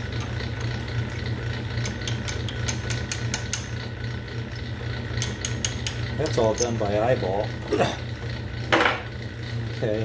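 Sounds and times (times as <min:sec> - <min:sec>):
metal lathe humming: 0:00.0 - 0:10.0.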